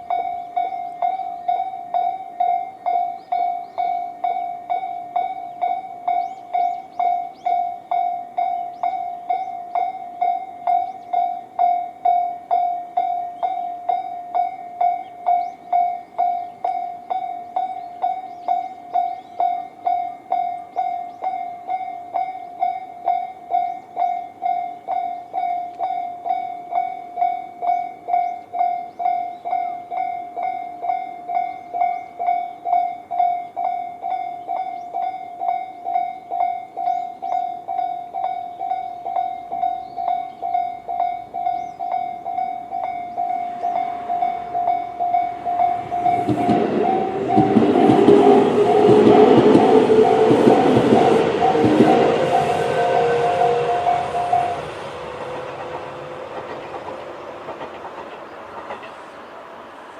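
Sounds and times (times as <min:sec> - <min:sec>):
level crossing alarm bells: 0:00.0 - 0:55.6.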